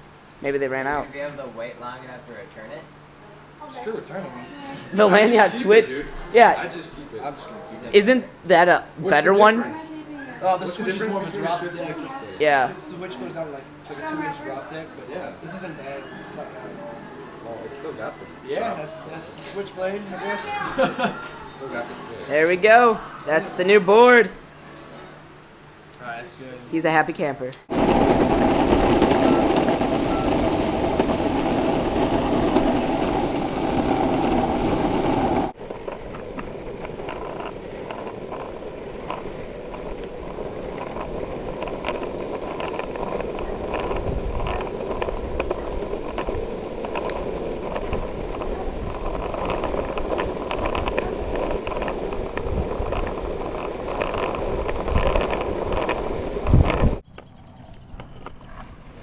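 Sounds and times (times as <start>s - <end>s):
skateboard wheels rolling on pavement: 3.8s - 25.0s, 27.6s - 59.0s
wheels clicking over cracks: 27.7s - 58.7s.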